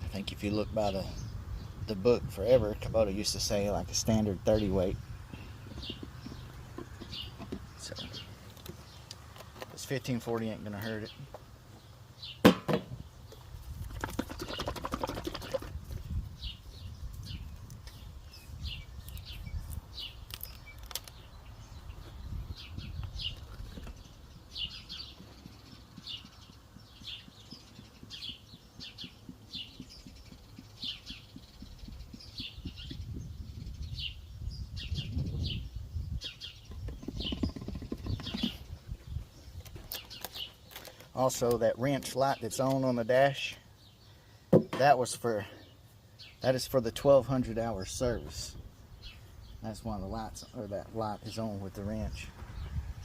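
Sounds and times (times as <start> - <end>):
small bird chirping: 3.5 - 12.4, 13.0 - 42.5.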